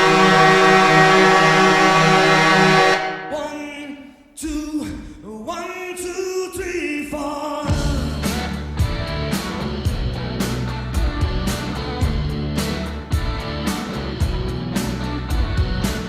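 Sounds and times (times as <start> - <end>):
band drums: 0.0 - 3.7, 7.7 - 16.0
arena goal horn: 0.0 - 3.8
pop-rock music with singing: 3.2 - 16.0.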